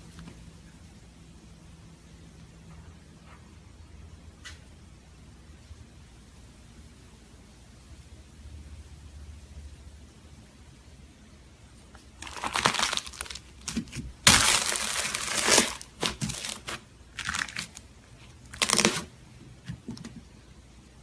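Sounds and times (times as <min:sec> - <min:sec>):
slime squished by hand: 0:12.2 - 0:17.9, 0:18.5 - 0:19.9.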